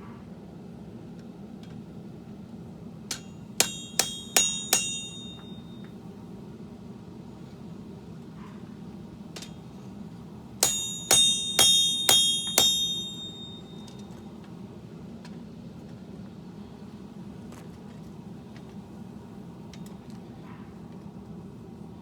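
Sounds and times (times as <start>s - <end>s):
steady low hum: 2.2s - 6.6s, 7.9s - 14.0s
hammer ringing on anvil: 3.1s - 5.9s, 10.6s - 14.0s.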